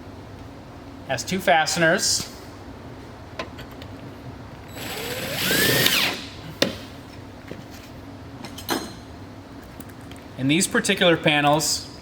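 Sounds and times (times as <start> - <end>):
power drill driving a screw: 4.7 - 6.3.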